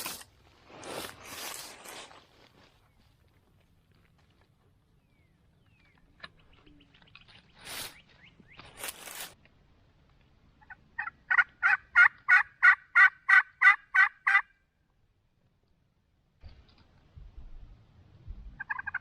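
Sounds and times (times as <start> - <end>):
turkey yelps: 10.6 - 14.5, 18.6 - 19.0.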